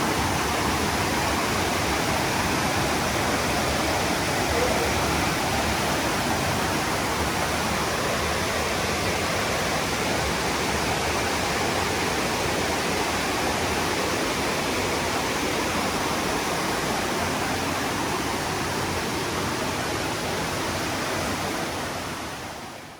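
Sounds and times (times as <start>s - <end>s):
fast-flowing water rushing: 0.0s - 22.9s.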